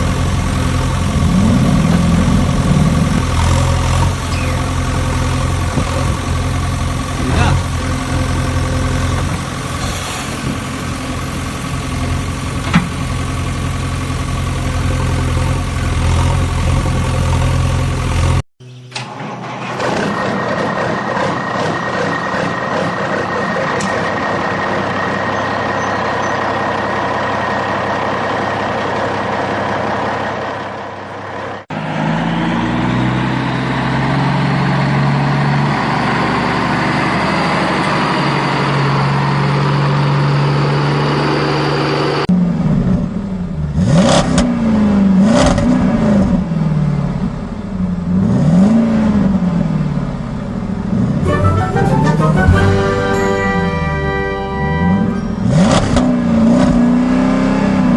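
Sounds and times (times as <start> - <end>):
vehicle engine running: 0.0 - 18.8.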